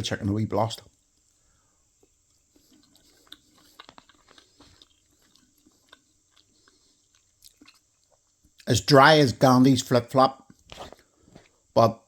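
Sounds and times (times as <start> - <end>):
faint chewing mouth clicks: 2.0 - 8.7.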